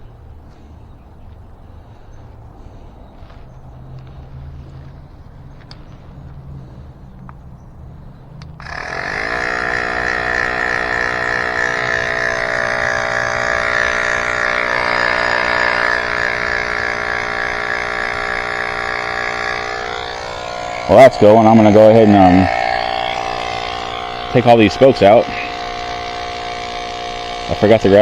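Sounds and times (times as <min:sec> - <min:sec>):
electric air pump buzzing: 0:08.5 - 0:28.0.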